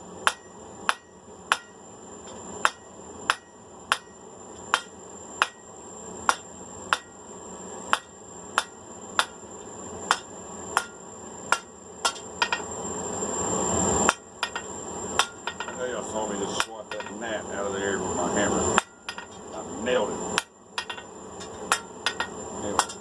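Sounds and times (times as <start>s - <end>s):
hammer striking steel on anvil: 0.2s - 1.8s, 2.6s - 5.6s, 6.3s - 7.2s, 7.9s - 9.4s, 10.1s - 12.6s, 14.1s - 15.8s, 16.6s - 17.2s, 18.8s - 19.4s, 20.4s - 23.0s.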